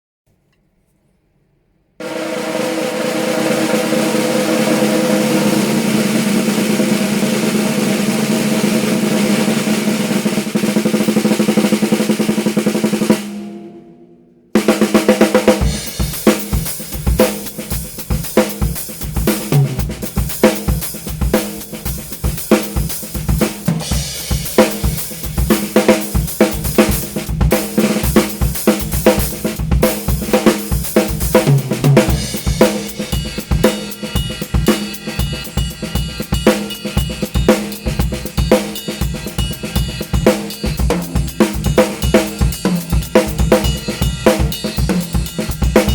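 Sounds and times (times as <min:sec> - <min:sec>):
wooden snare drum roll: 0:02.0 - 0:13.9, 0:23.4 - 0:33.1
drum kit beat: 0:02.0 - 0:45.9.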